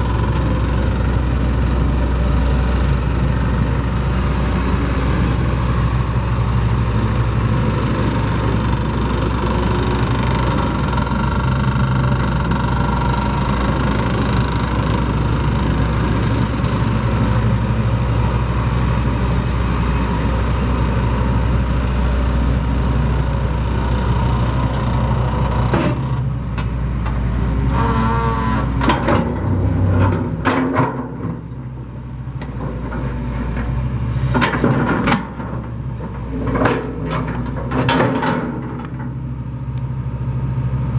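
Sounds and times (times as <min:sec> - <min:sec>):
excavator diesel engine running: 0:00.0 - 0:40.9
clunks creaks and squeaks: 0:24.7 - 0:31.5.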